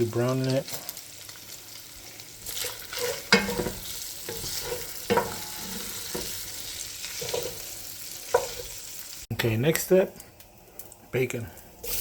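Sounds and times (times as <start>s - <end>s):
sausage sizzling in a pot: 0.0s - 12.0s
utensil scraping a pot: 2.4s - 8.8s.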